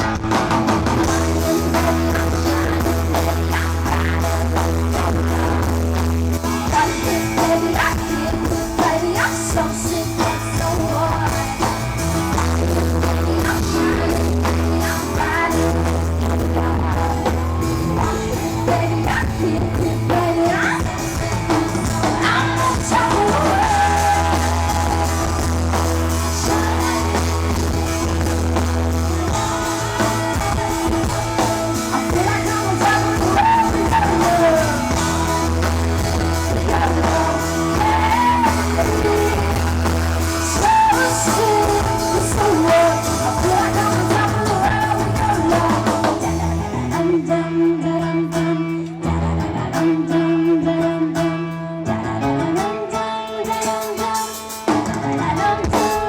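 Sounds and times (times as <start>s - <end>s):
guitar bass and drums: 0.0s - 56.0s
woman singing: 0.9s - 56.0s.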